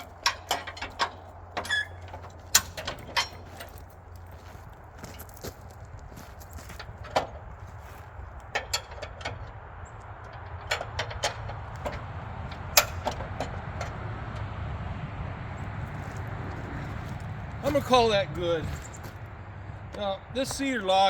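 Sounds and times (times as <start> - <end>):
sharp clicks and knocks: 0.0 - 4.0, 6.6 - 14.5
steady low rumble: 0.0 - 21.0.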